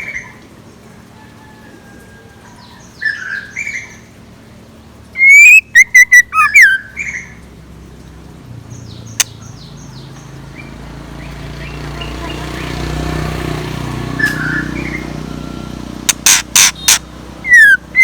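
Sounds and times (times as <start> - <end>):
bird calling: 1.5 - 4.2, 5.2 - 7.4, 8.7 - 18.0
sharp click: 16.1 - 17.0.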